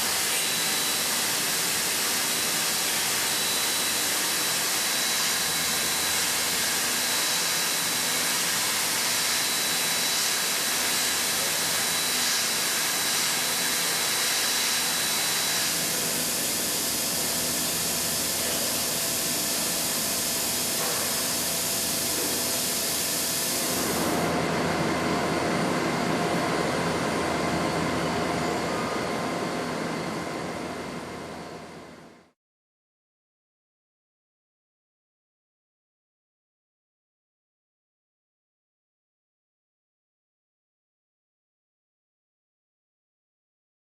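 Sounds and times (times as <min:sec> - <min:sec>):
low machine noise: 0:00.0 - 0:32.3
milling machine high whine: 0:00.0 - 0:32.3.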